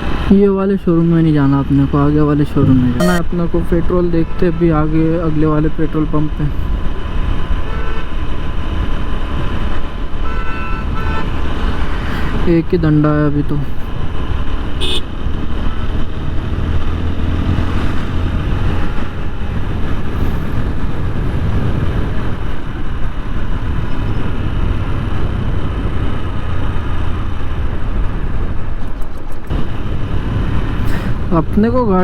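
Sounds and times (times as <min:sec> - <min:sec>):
wind on microphone: 0:16.0 - 0:31.3.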